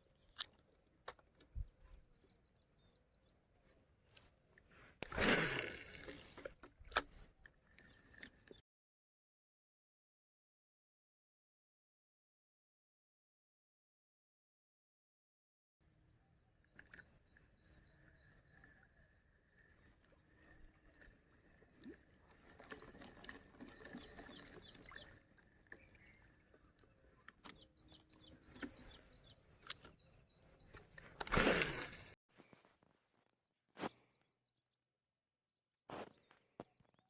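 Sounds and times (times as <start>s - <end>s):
bird chirping: 16.1s - 19.1s, 23.6s - 31.2s.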